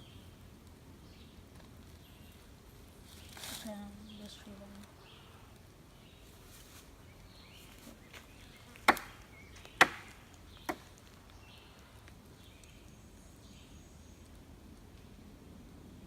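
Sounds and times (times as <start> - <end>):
wood knocking on tree trunk: 8.8 - 10.9.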